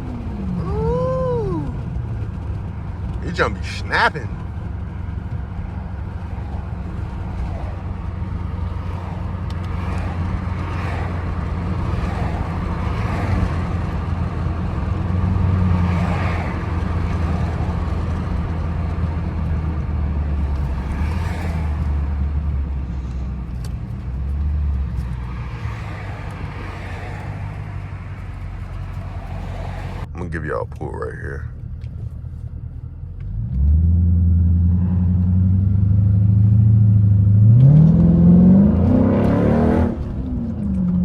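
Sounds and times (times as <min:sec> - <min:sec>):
tyre noise on wet road: 0:00.0 - 0:30.1
car engine drone from inside: 0:00.0 - 0:41.0.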